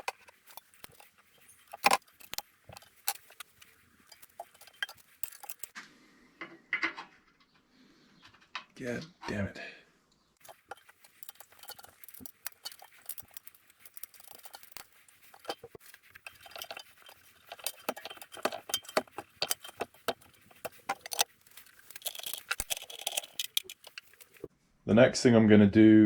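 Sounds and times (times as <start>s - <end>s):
metal parts clinking and rattling: 0.0s - 5.7s, 10.4s - 24.5s.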